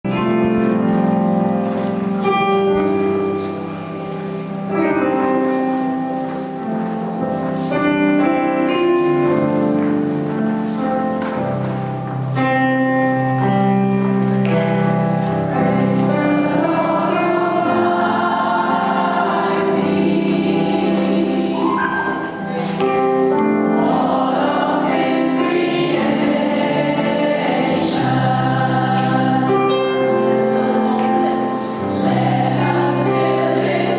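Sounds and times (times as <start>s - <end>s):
gospel choir singing: 15.2s - 33.9s.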